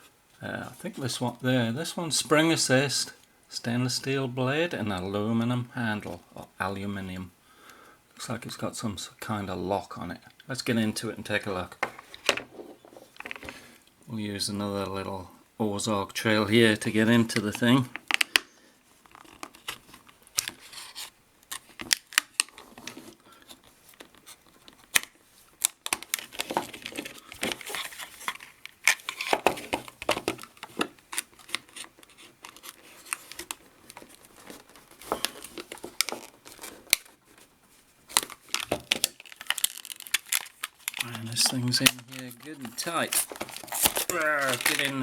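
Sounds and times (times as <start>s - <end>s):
packaging crackling: 19.0s - 37.5s, 38.1s - 45.0s
packaging tearing: 24.2s - 37.2s, 38.1s - 45.0s.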